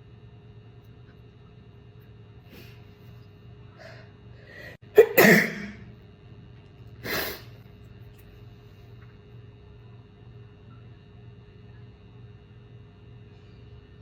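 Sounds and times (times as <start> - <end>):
person sneezing: 4.8 - 5.9, 7.0 - 7.5.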